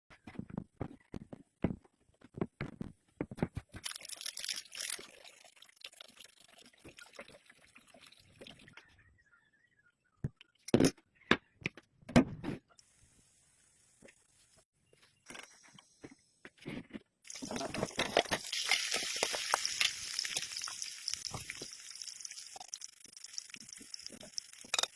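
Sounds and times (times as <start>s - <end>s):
liquid pouring: 3.8s - 8.8s, 17.3s - 24.9s.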